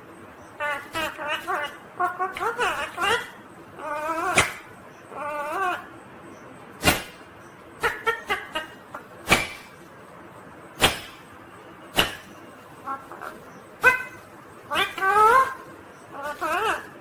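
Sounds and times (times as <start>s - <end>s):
parakeet chirps: 0.4s - 9.8s, 11.9s - 17.0s
parakeet screeching: 0.6s - 5.9s, 12.0s - 17.0s.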